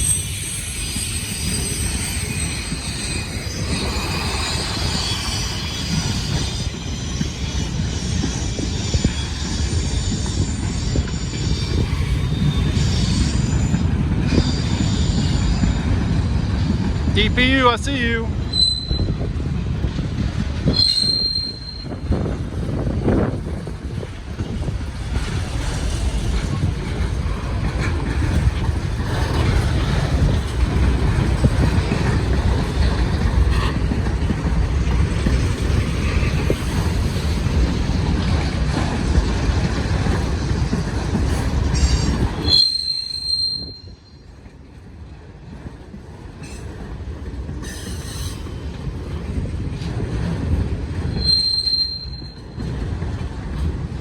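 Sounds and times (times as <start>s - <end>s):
flange squeal: 0.0s - 15.9s, 18.5s - 19.2s, 20.7s - 22.0s
train wheels rumbling on rails: 0.0s - 54.0s.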